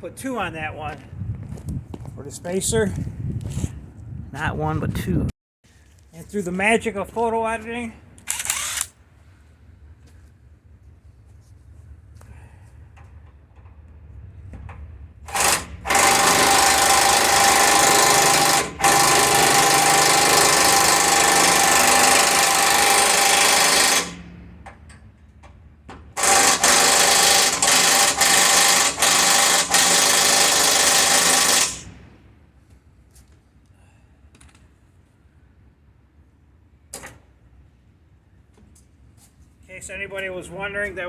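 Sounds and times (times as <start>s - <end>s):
impact wrench hammering: 15.3s - 24.2s, 26.2s - 31.9s.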